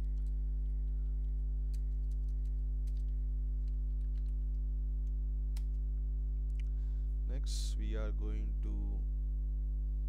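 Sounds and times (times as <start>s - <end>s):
low electrical hum: 0.0s - 10.0s
keyboard keys clicking: 1.7s - 4.4s.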